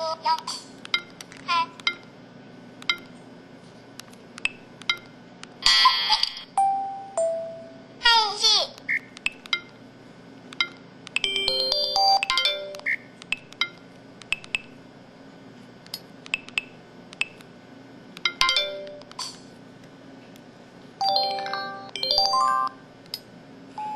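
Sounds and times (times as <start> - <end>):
multi-note chime: 6.6 - 7.8.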